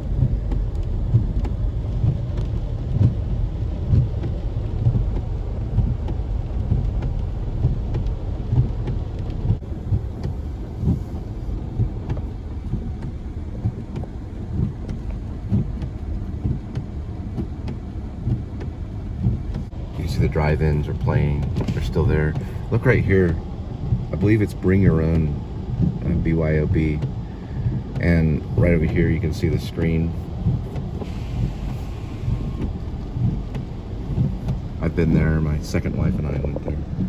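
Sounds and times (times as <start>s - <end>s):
car road and engine rumble: 0.0s - 37.0s.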